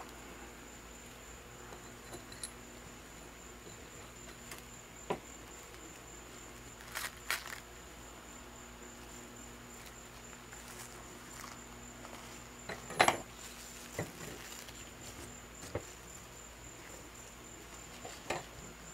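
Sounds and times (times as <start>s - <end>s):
quiet steady hum: 0.0s - 18.9s
plastic wrap crinkling: 6.8s - 7.6s, 13.4s - 15.0s.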